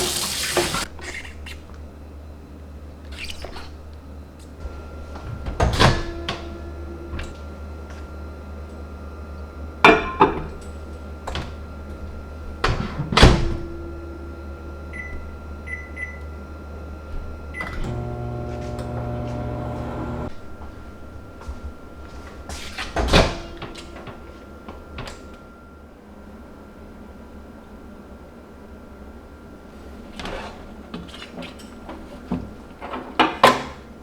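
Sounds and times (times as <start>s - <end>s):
kitchen appliance humming: 0.0s - 0.9s, 14.6s - 21.5s
kitchen knocks and clatters: 9.9s - 10.6s.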